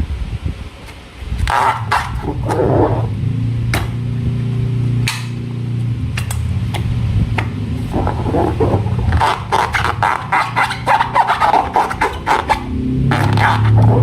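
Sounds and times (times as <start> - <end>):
steady low hum: 0.0 - 14.0
slime squishing: 7.4 - 14.0.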